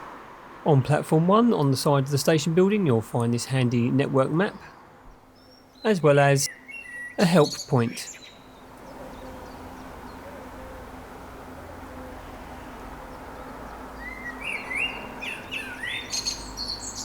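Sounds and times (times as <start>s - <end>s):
songbird chirping: 0.7s - 17.0s.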